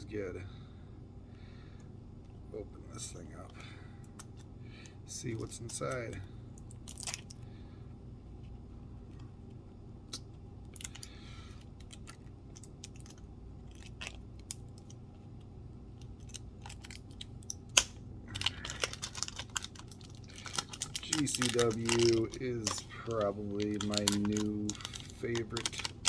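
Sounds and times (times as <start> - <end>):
packaging rustle: 16.2 - 17.4, 18.3 - 26.0.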